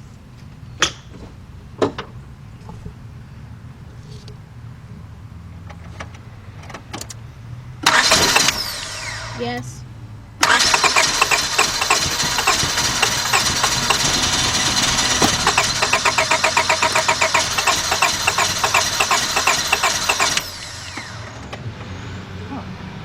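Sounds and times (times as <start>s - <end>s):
starter cranking car engine: 7.8s - 9.6s, 10.4s - 21.8s.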